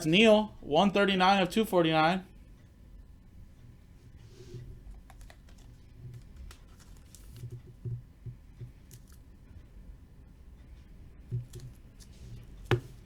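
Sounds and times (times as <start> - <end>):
soft rustling of packaging: 4.1 - 9.4.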